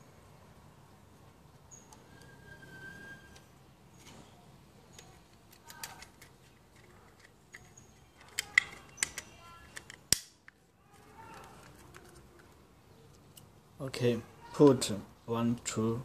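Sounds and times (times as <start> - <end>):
plastic toy parts clicking: 4.9 - 13.5.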